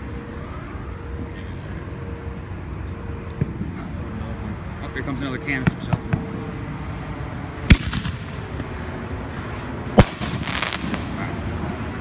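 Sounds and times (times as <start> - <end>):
firework shell bursting: 7.7 - 8.8, 10.0 - 11.3
firework crackle: 7.7 - 8.9, 10.0 - 11.6.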